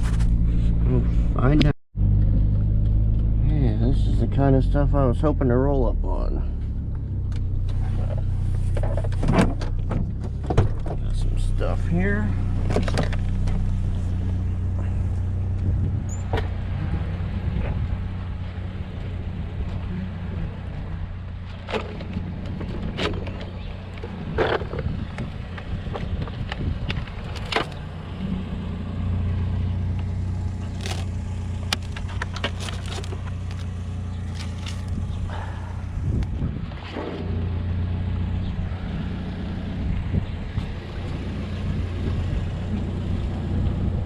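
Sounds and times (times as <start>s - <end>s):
pickup engine idling: 16.7s - 36.6s.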